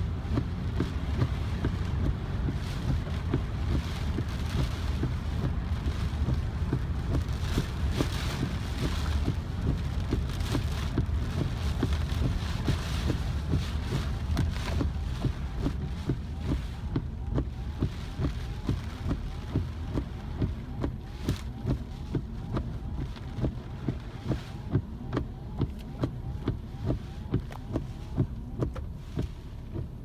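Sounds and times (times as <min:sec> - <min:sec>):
rain: 0:00.0 - 0:30.0.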